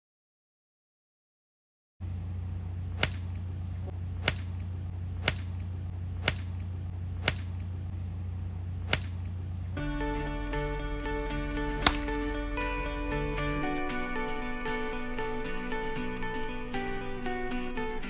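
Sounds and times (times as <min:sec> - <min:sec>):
low hum: 0:02.0 - 0:13.6
sharp cracks: 0:02.9 - 0:03.6, 0:04.2 - 0:07.9, 0:08.8 - 0:09.4
music with plucked strings: 0:09.8 - 0:18.0.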